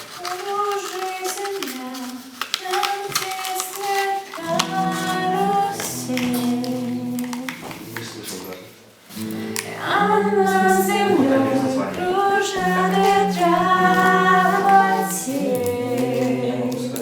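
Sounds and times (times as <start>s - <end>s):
music melody line: 4.4s - 7.6s, 9.1s - 17.0s.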